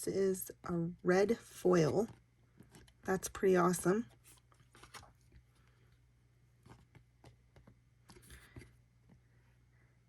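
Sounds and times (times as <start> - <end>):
trading cards rustling: 4.1 - 6.0.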